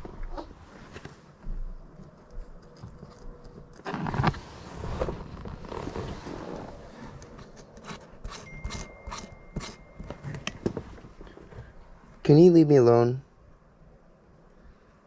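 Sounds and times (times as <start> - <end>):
faint thin steady tone: 7.0 - 15.0.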